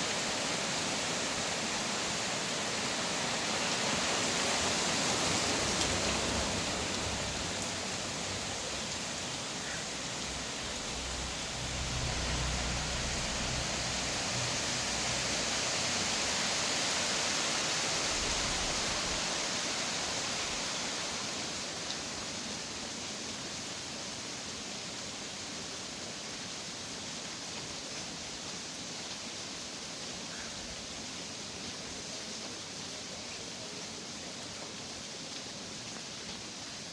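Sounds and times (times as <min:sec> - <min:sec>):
steady rainfall hiss: 0:00.0 - 0:36.9
low rumble: 0:10.2 - 0:15.6.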